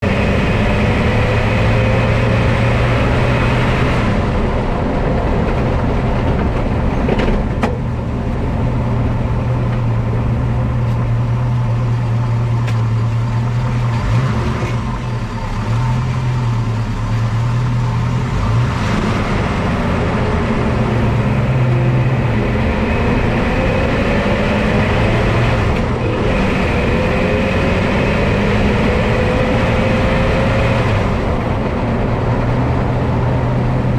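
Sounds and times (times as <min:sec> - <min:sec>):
rising tone of car accelerating: 0:00.0 - 0:05.0, 0:11.9 - 0:33.9
car driving and braking: 0:00.0 - 0:33.9
steady low braking hum: 0:04.2 - 0:27.1.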